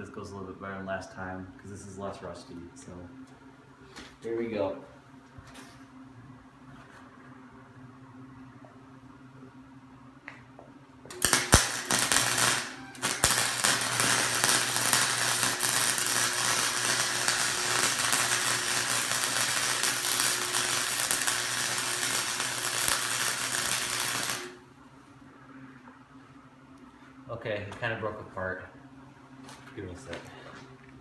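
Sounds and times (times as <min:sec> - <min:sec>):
arc welding crackle: 0:11.1 - 0:24.6.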